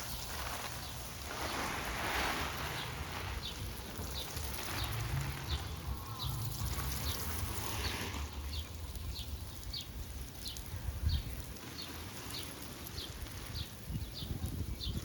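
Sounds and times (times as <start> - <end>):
small bird chirping: 0.1 - 15.0
steady low rumble: 1.1 - 11.6.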